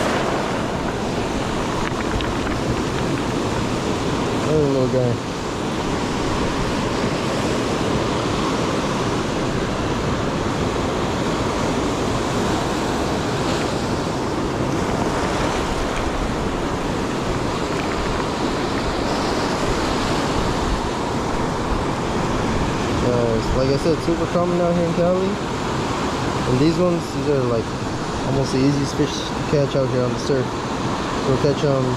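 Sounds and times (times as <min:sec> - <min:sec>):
ocean surf breaking: 0:00.0 - 0:31.9.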